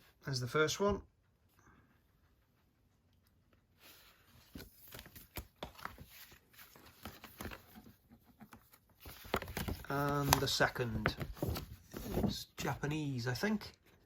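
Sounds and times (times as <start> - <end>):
paper rustling and crackling: 3.8 - 12.8.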